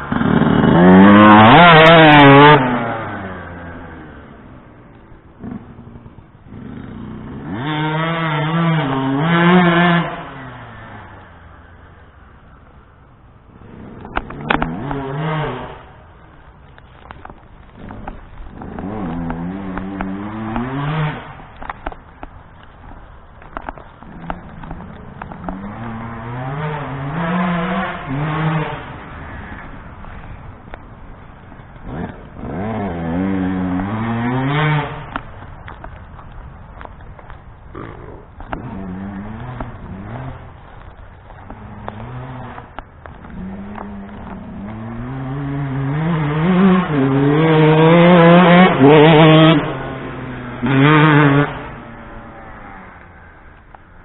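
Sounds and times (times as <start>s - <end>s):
motocross engine revving: 0.0s - 4.4s, 5.4s - 11.3s, 13.5s - 16.0s, 17.7s - 21.9s, 24.0s - 30.7s, 31.7s - 35.8s, 37.7s - 53.6s.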